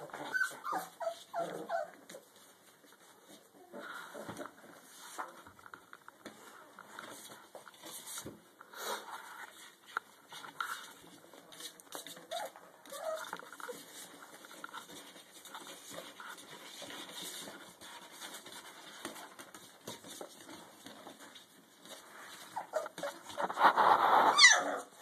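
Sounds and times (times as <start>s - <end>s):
puppies squeaking and whimpering: 0.0s - 2.2s, 12.2s - 16.9s, 22.4s - 25.0s
small paws clicking and shuffling: 0.0s - 25.0s.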